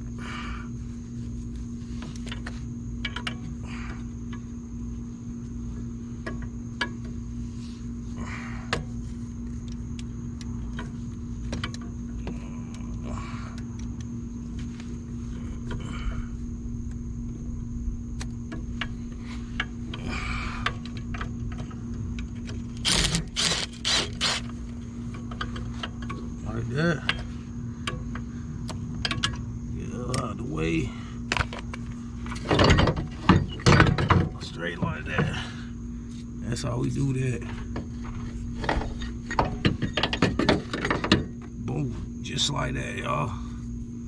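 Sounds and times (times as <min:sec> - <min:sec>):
steady background hum: 0:00.0 - 0:44.0
tool scraping rasps: 0:22.7 - 0:24.6.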